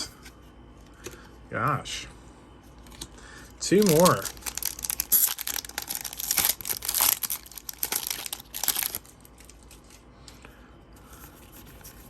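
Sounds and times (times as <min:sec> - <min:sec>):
foil wrapper tearing and crinkling: 0:03.6 - 0:10.0.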